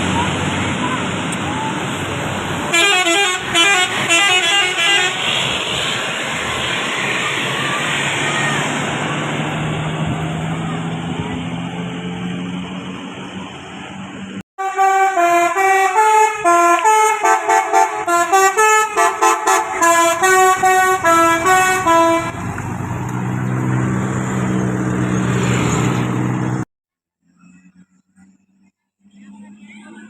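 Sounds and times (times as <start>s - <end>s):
bus engine running: 0.0s - 26.7s
melodic bus air horn: 2.7s - 6.0s, 14.6s - 22.4s.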